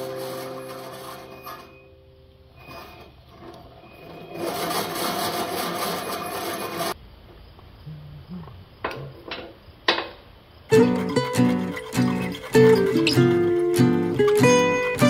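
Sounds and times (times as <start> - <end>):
wood rubbing and scraping: 0.0 - 1.8, 2.7 - 7.0, 10.7 - 15.0.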